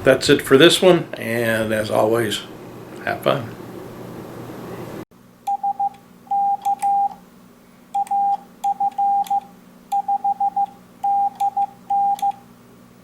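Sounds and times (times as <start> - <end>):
faint steady hum: 0.0 - 13.0
morse code beeps: 5.5 - 7.2, 8.0 - 12.4.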